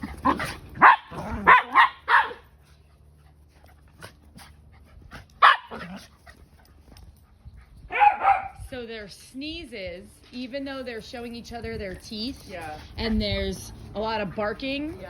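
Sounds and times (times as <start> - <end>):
dogs growling: 0.0 - 1.8
dogs barking: 0.0 - 2.6, 5.3 - 6.1, 7.9 - 8.6.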